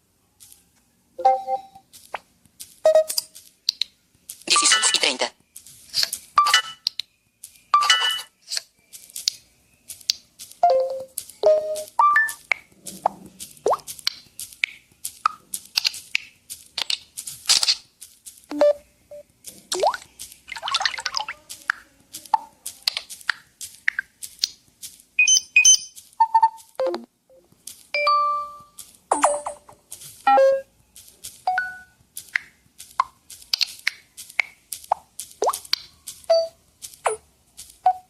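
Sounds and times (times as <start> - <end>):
phone notification blips and chimes: 10.6 - 12.4, 25.2 - 27.4, 28.0 - 30.6.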